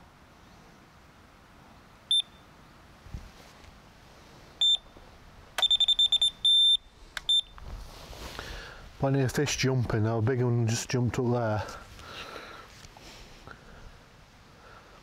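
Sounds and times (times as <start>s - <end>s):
bite alarm beeps: 2.1s - 2.4s, 4.6s - 4.9s, 5.6s - 7.6s.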